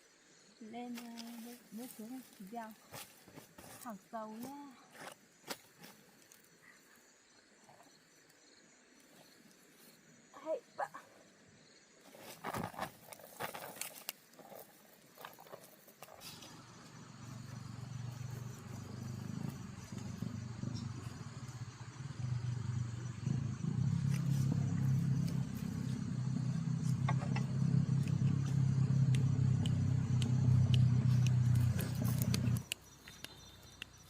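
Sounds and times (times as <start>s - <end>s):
motor engine humming: 16.1s - 34.0s.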